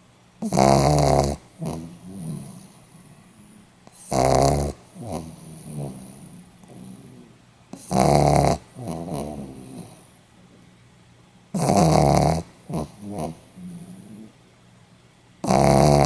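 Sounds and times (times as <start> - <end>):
dog snoring: 0.4 - 10.2, 11.5 - 14.4, 15.4 - 16.0
dog breathing softly: 0.4 - 10.3, 11.6 - 14.4.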